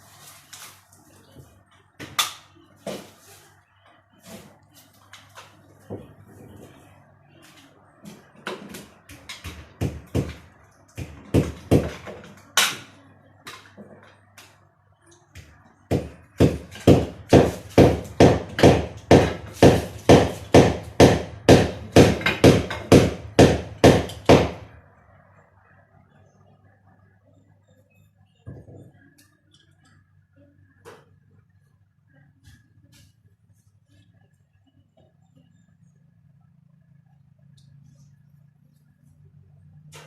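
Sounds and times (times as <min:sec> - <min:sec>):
hammer strikes: 0:15.9 - 0:24.7
faint low hum: 0:20.5 - 0:40.0.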